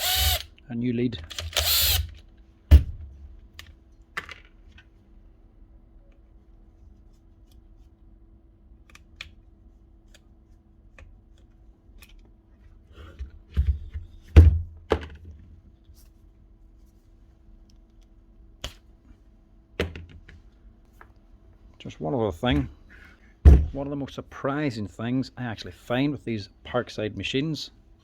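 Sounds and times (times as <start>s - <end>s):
sharp knocks and thunks: 23.4s - 23.8s.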